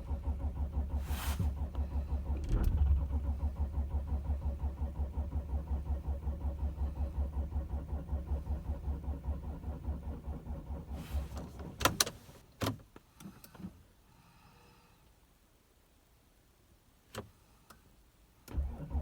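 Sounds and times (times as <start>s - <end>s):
starter motor cranking engine: 0.0s - 11.5s.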